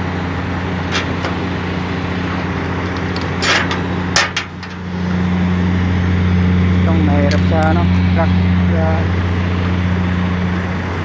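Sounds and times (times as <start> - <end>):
low machine hum: 0.0 - 11.0
clicks and knocks on metal: 0.9 - 1.4, 2.6 - 4.8.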